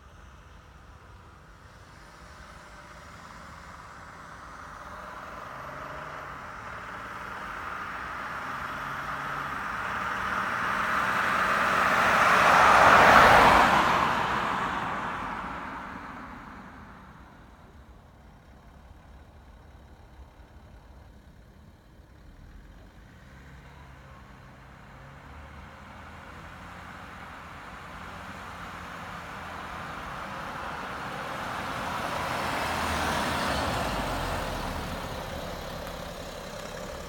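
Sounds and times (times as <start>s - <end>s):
car passing by: 1.9s - 17.6s, 23.0s - 37.0s.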